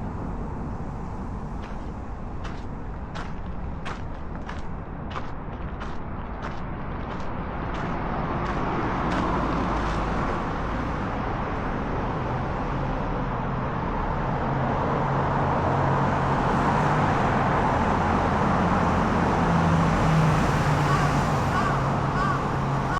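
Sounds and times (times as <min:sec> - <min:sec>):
road traffic: 0:00.0 - 0:22.9
vehicle engine hum: 0:00.0 - 0:22.9
walking footsteps: 0:01.6 - 0:10.3.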